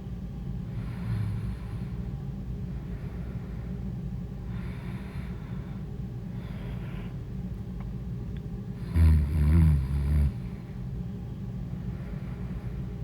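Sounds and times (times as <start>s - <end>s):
person breathing heavily: 4.4s - 7.2s, 11.8s - 13.0s
person snoring: 8.8s - 10.4s.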